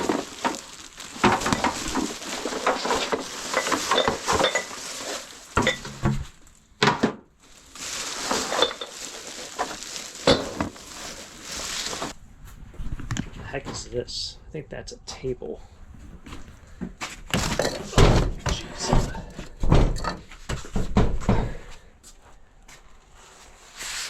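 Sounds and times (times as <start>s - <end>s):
household items clattering: 0.0s - 12.2s, 17.3s - 21.7s.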